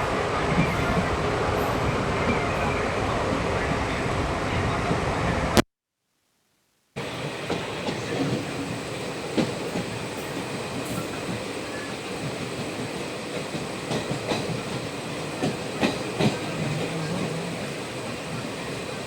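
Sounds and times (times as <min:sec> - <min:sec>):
train rumbling along track: 0:00.0 - 0:05.6, 0:07.0 - 0:19.0
sharp clicks from rails: 0:07.0 - 0:18.5.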